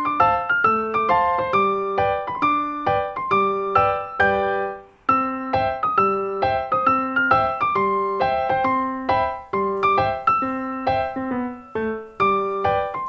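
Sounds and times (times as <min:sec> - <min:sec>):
piano melody over chords: 0:00.0 - 0:13.0.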